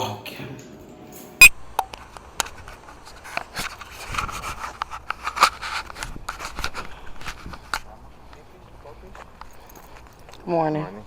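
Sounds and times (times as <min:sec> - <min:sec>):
camera rustling against clothing: 0:02.0 - 0:08.4.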